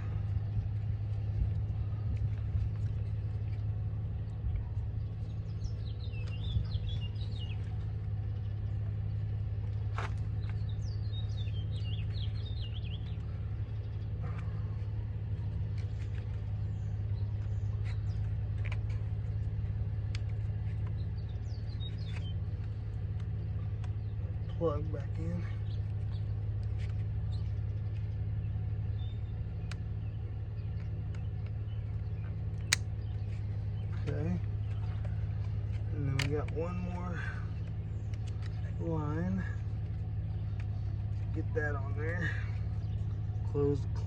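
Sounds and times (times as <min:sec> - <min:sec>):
birds chirping: 0:00.0 - 0:44.0
low engine-like rumble: 0:00.0 - 0:44.0
sharp clicks of hoses and connectors: 0:32.5 - 0:33.0, 0:35.4 - 0:36.6.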